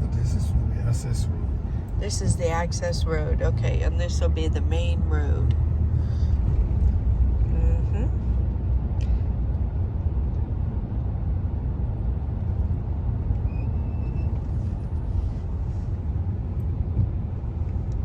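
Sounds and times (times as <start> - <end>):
car engine and tyres rumbling: 0.0 - 18.0.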